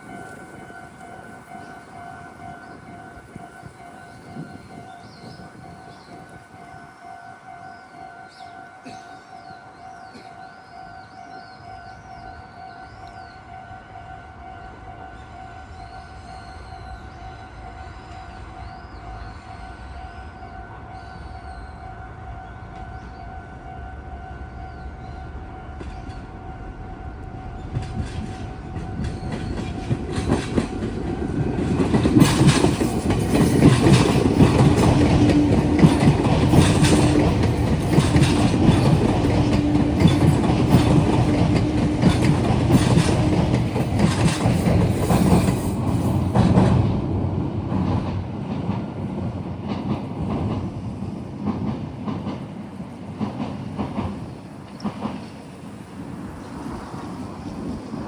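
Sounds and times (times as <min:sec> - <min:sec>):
crossing warning tone: 0:00.0 - 0:46.9
train wheels clattering: 0:27.6 - 0:57.0.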